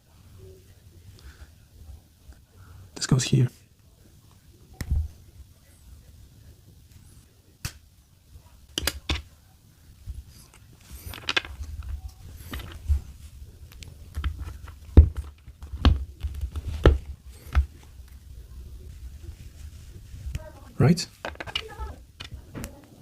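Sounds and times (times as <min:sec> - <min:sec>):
plastic parts clicking together: 0:08.7 - 0:09.3, 0:21.2 - 0:22.4
rustling: 0:10.0 - 0:23.0.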